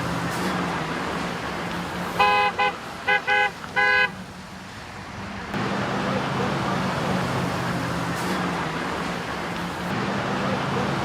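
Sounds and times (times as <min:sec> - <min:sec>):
horn honking: 0:02.1 - 0:04.2.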